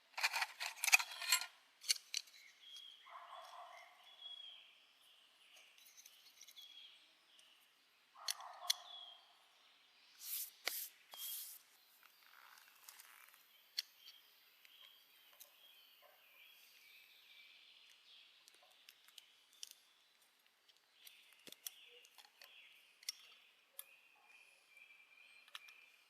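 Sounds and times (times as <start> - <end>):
birds chirping: 2.1 - 26.0
short scraping hissing noises: 10.2 - 11.7.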